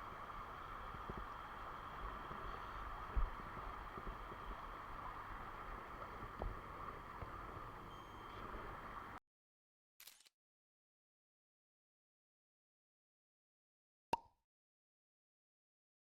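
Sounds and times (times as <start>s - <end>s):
stream water flowing: 0.0s - 9.2s.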